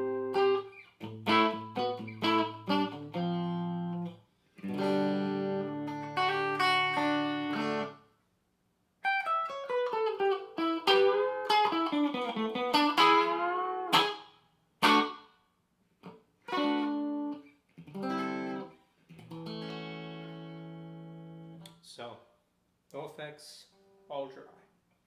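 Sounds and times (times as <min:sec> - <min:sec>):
clean electric guitar: 0:00.0 - 0:08.0, 0:09.0 - 0:15.2, 0:16.0 - 0:21.7.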